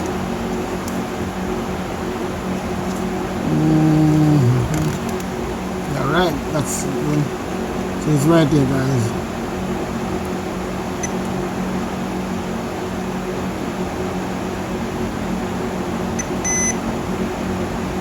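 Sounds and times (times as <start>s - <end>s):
electrical hum: 0.0s - 13.2s
multimeter beep: 16.2s - 16.8s.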